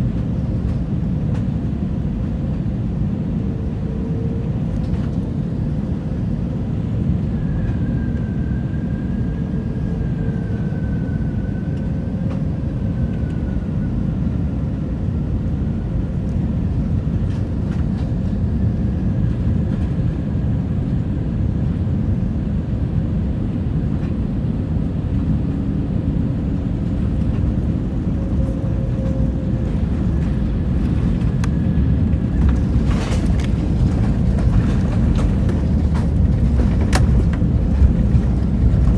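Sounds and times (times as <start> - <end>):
airplane cabin rumble: 0.0 - 38.9
faint engine tones: 0.0 - 38.9.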